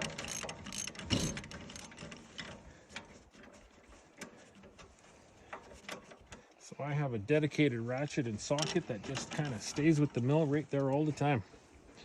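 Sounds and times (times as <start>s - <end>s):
ratchet wrench clicking: 0.0s - 2.1s.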